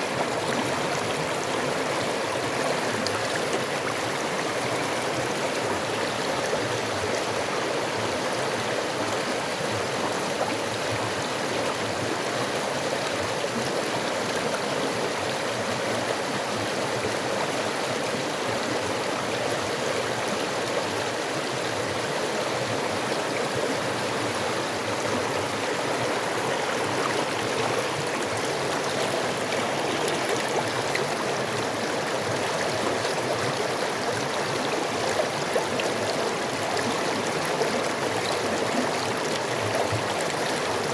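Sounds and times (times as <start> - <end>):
creek water babbling over rocks: 0.0 - 40.9.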